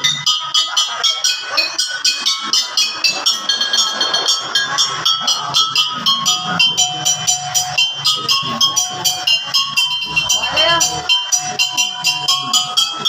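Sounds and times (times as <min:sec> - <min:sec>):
music with ticking beat: 0:00.0 - 0:13.0.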